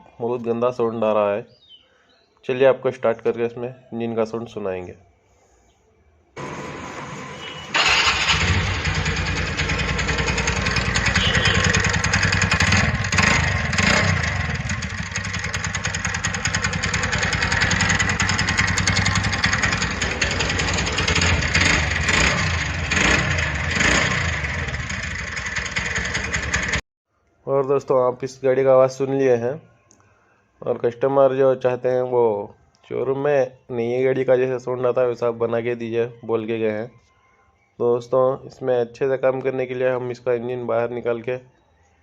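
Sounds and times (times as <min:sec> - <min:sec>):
engine running with rattling knock: 0:06.4 - 0:26.8
scooter engine cranking: 0:07.4 - 0:26.8.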